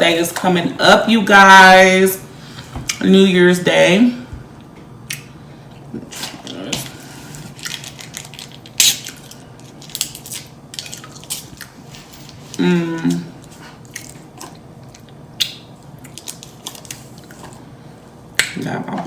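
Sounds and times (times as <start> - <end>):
person chewing and smacking: 13.4 - 17.7.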